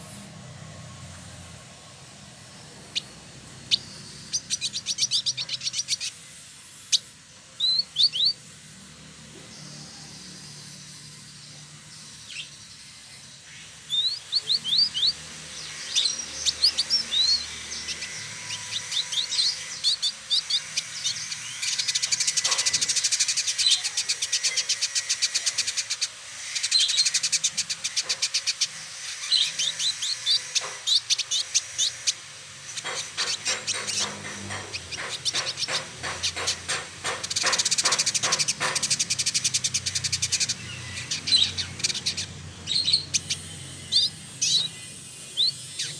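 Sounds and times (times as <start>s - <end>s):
bird singing high trills: 2.9s - 8.7s, 9.6s - 45.9s.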